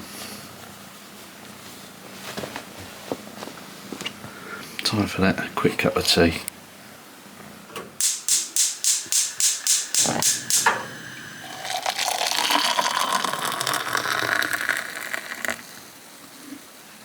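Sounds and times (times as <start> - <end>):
sharp clicks: 8.0 - 10.8
water running into kettle: 9.8 - 16.0.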